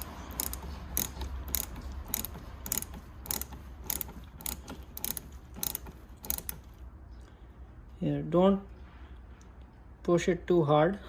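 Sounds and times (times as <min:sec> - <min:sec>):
hand ratchet clicking: 0:00.0 - 0:06.8.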